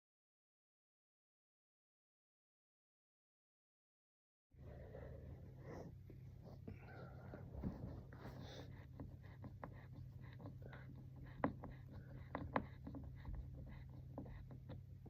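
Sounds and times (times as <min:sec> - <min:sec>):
faint scratching: 0:04.6 - 0:15.0
steady low hum: 0:04.6 - 0:15.0.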